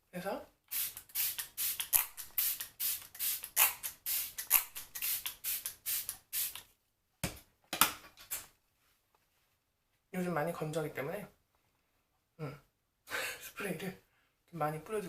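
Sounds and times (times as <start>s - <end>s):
spray bottle hissing puffs: 0.7s - 6.7s.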